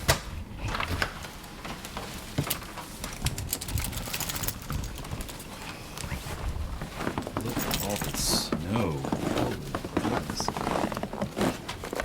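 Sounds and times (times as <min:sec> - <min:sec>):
footsteps crunching through snow: 0:06.2 - 0:12.0.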